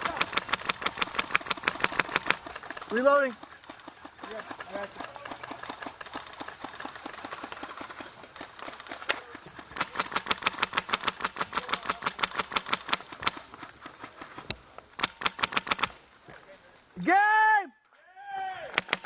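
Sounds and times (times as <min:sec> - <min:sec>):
airsoft rifle firing full auto: 0:00.0 - 0:03.0, 0:09.0 - 0:13.4, 0:15.0 - 0:16.0, 0:18.7 - 0:19.0.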